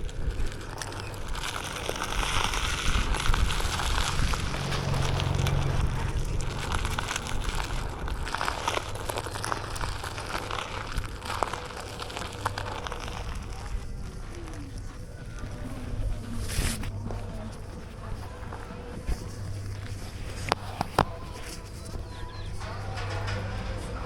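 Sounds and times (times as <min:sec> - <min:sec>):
small crackling clicks: 0:00.0 - 0:15.6
wind rumbling on microphone: 0:00.0 - 0:24.0.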